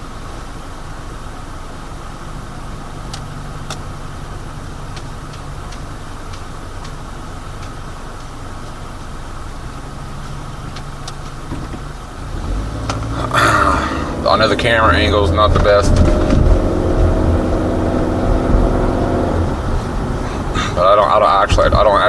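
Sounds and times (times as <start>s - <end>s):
car engine idling: 0.0s - 22.0s
light sharp ticks: 3.1s - 4.0s, 4.8s - 9.4s, 10.1s - 11.9s.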